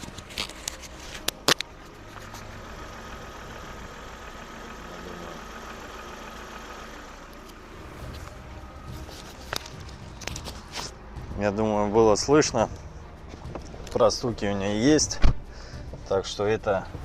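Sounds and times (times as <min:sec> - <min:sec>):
car engine idling: 0:00.0 - 0:17.0
light steady engine knock: 0:02.4 - 0:07.2.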